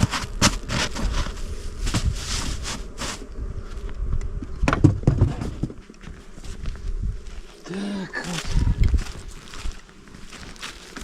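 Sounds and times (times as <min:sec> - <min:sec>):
rustling: 0:00.0 - 0:04.0, 0:05.0 - 0:11.0
thumps: 0:04.6 - 0:05.8.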